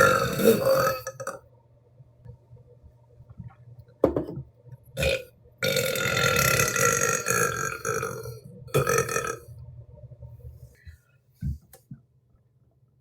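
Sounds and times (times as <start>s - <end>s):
woman burping: 0.0s - 1.4s.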